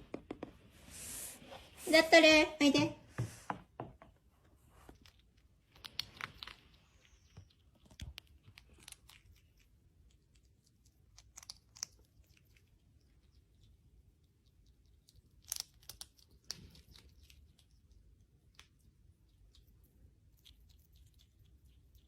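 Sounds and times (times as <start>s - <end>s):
chewing crunches and clicks: 5.0s - 22.0s.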